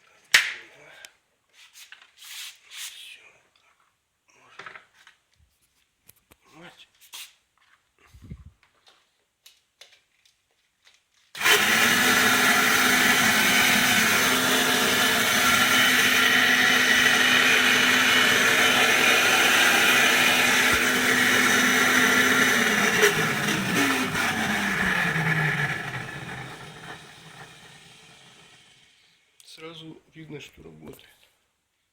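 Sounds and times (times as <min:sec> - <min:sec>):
vacuum cleaner motor running: 0:11.4 - 0:28.9.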